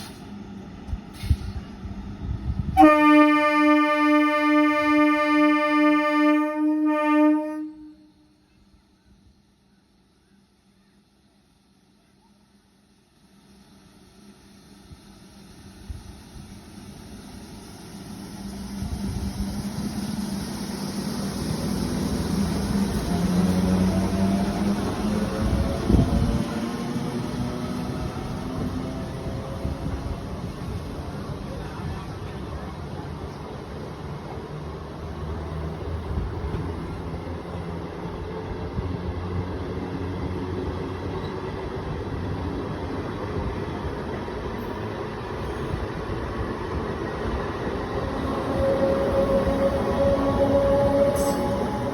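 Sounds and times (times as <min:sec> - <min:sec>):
train wheel and running noise: 0:00.0 - 0:51.9.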